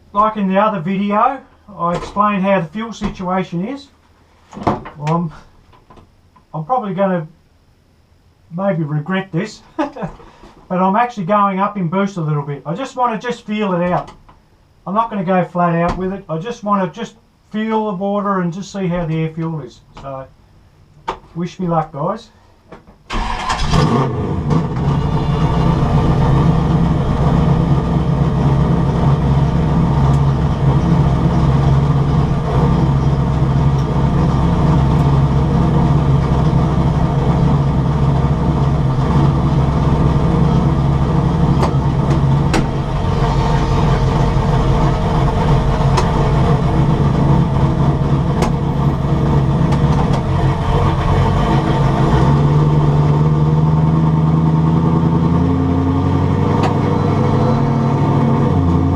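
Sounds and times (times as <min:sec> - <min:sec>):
turbocharged car engine running: 0:23.2 - 0:58.9.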